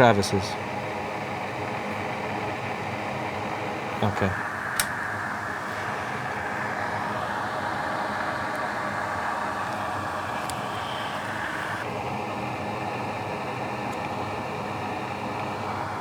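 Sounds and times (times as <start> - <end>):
whooshing fan airflow: 0.0 - 16.0.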